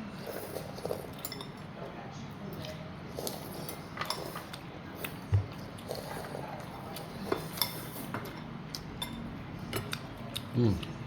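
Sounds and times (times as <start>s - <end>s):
cutlery clinking against bowls: 0.2s - 2.0s, 2.6s - 10.4s.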